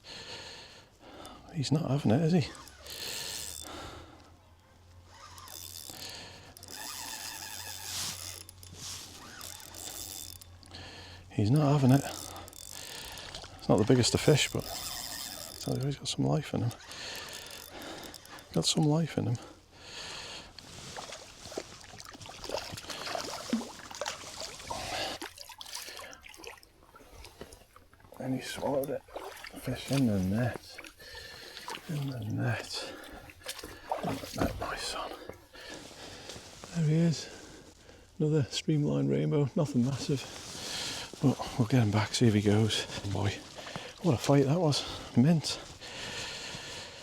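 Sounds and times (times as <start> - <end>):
fishing reel ratcheting: 2.5 - 3.8, 5.1 - 10.8, 11.6 - 18.6
fish splashing in water: 20.9 - 34.6.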